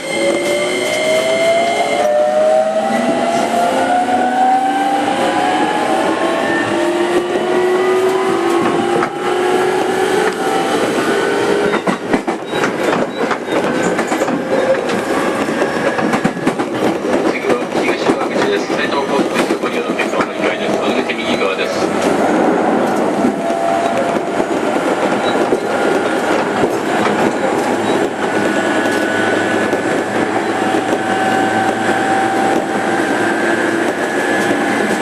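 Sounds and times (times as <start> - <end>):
wheels clicking over rail joints: 11.5 - 21.3, 22.9 - 35.0.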